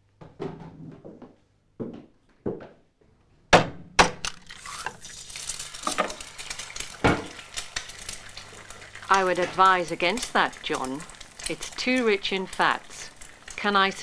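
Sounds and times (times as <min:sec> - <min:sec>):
pan and utensils clattering: 0:04.4 - 0:13.8
food sizzling in a hot pan: 0:04.5 - 0:14.0.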